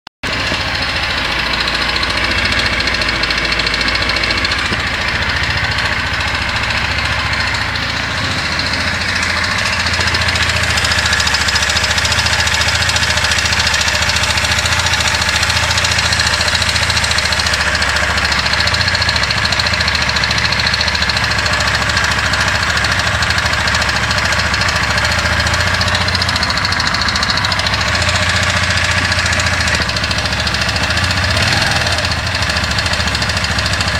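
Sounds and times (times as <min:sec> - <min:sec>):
motorcycle engine idling: 0:00.2 - 0:33.9.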